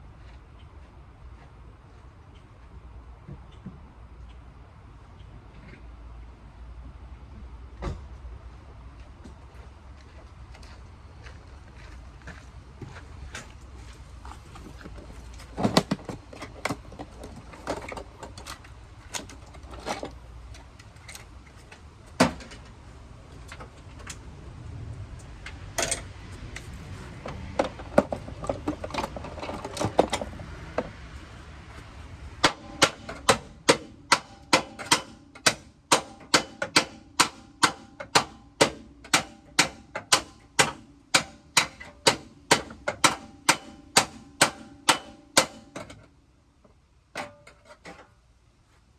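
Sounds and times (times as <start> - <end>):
hammer striking metal: 32.4 - 45.8.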